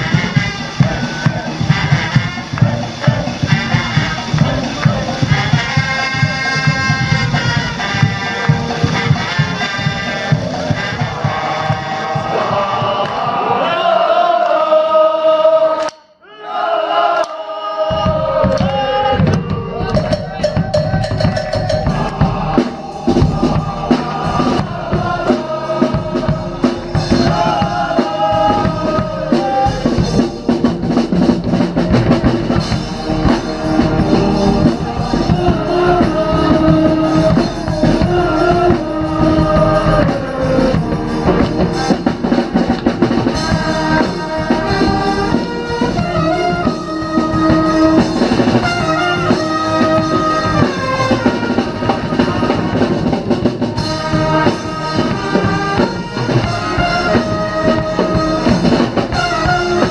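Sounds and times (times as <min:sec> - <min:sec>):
brass band playing party tune: 0:00.0 - 0:15.9, 0:16.6 - 0:59.9.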